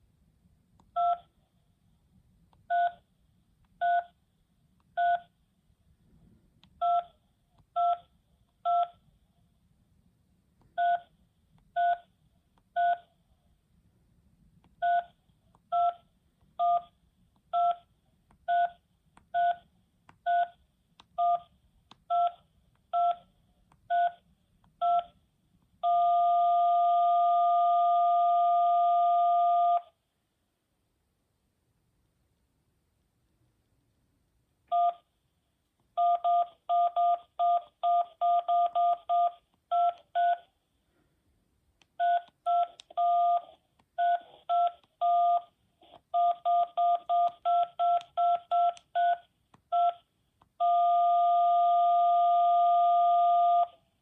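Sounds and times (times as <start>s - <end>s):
telephone keypad touch-tones: 46.2s - 49.2s.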